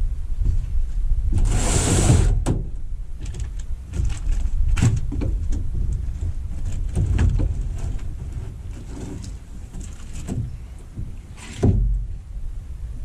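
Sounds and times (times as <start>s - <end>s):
low rumble: 0.0s - 8.8s.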